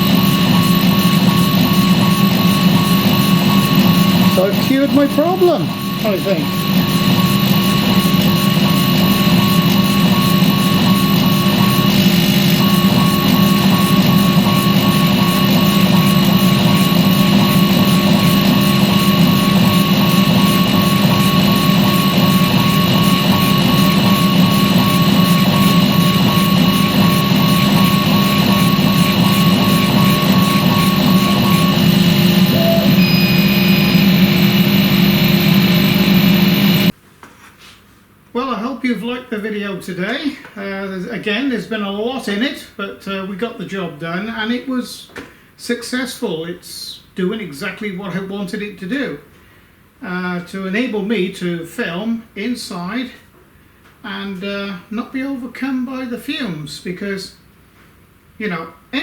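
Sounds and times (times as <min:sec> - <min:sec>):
thin tone: 0:00.0 - 0:36.9
fan humming with high whine: 0:00.0 - 0:37.0.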